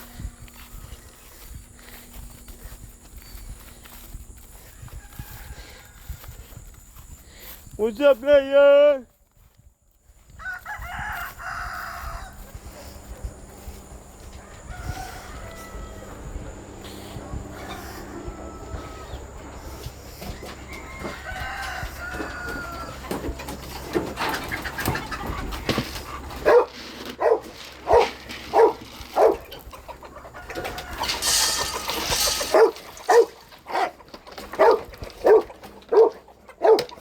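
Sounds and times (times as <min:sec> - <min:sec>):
farm animal calling: 0:10.5 - 0:37.0.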